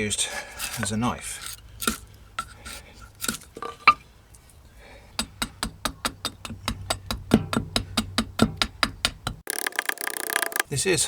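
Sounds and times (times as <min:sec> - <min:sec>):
hatchet cutting wood clicks: 0:00.3 - 0:03.6.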